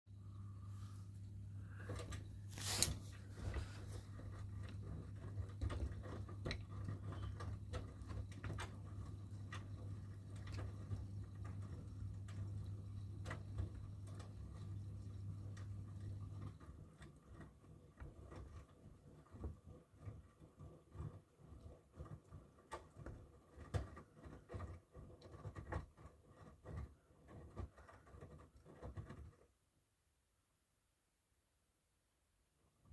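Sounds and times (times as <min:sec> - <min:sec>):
washing machine motor hum: 0:00.1 - 0:19.0.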